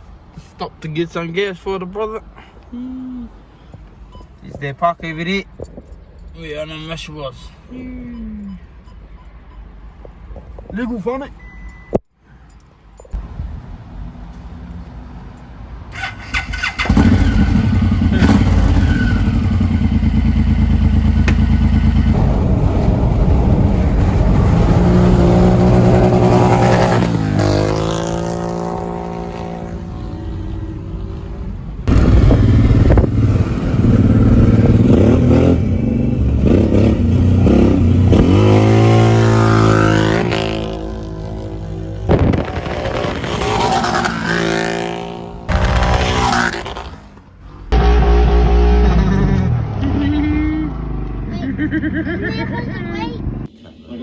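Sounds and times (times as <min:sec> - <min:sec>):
motorcycle engine accelerating: 0:16.0 - 0:53.5.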